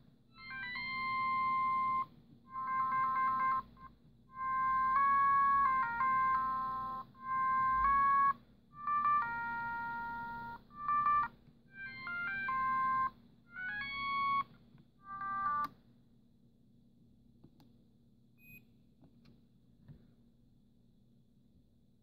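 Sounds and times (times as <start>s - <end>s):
mobile phone ringtone melody: 0.4s - 14.4s, 15.1s - 15.7s.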